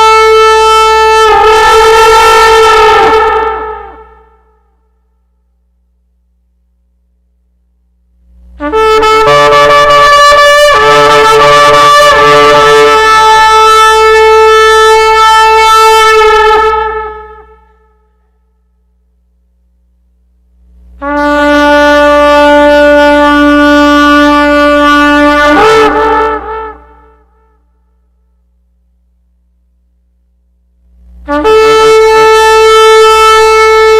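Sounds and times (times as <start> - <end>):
ram's horn blasts: 0.0 - 4.9, 8.2 - 18.4, 20.6 - 28.4, 31.2 - 33.9.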